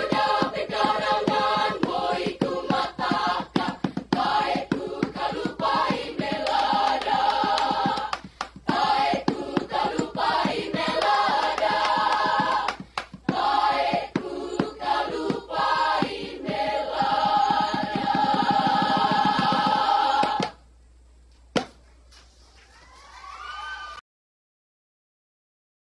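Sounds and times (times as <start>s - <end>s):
choir singing: 0.0s - 20.6s.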